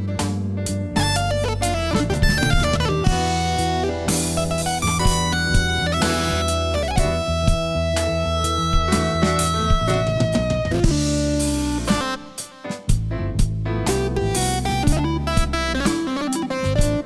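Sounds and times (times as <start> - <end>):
drum kit hits: 0.0 - 17.0
electric guitar: 1.0 - 12.6.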